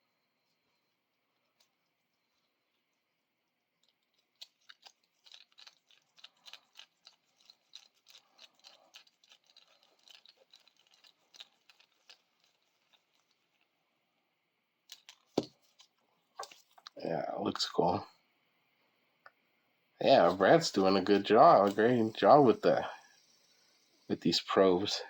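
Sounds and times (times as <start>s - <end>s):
small stick and bead clicking: 3.8s - 13.7s, 14.8s - 17.0s.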